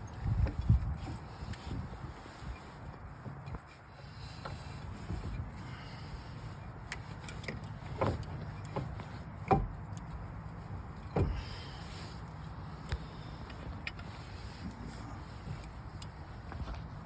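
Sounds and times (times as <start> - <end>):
metal knocks and clicks of brake parts: 6.9 - 12.0.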